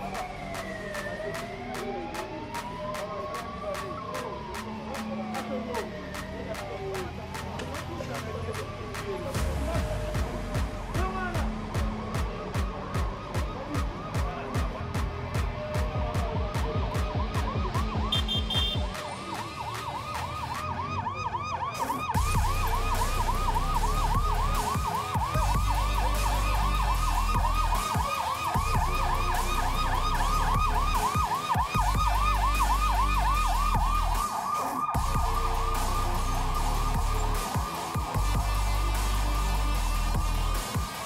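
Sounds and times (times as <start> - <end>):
electronic siren yelping: 0.0 - 9.1, 16.5 - 39.8.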